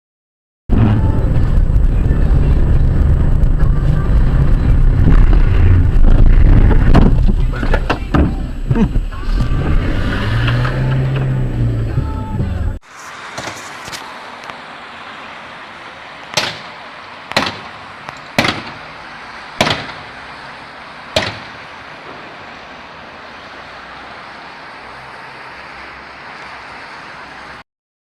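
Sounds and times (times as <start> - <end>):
steady background noise: 0.7 - 27.6
sharp short bangs: 16.3 - 18.9, 19.6 - 20.2, 21.2 - 22.2.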